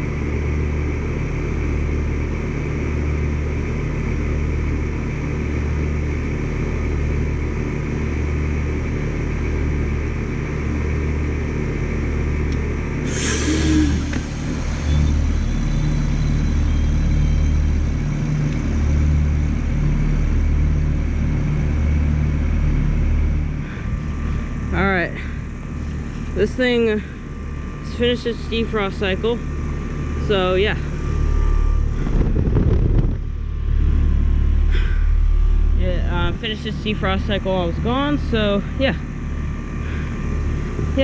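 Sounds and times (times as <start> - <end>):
heat pump units humming: 0.0 - 41.0
short hiss: 13.0 - 14.9.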